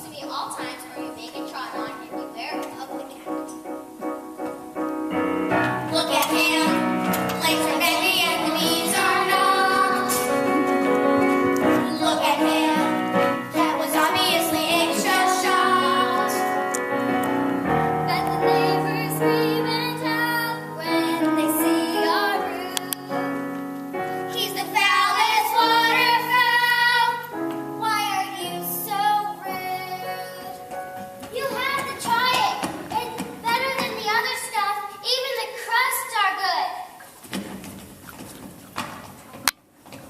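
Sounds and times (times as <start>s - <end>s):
instrumental accompaniment: 1.2s - 33.4s
young voices singing: 5.6s - 23.4s, 24.2s - 36.6s.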